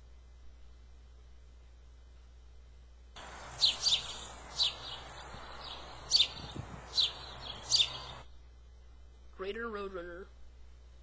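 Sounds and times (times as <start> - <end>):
outdoor background hiss: 0.0 - 11.0
sparrows chirping: 3.2 - 8.2.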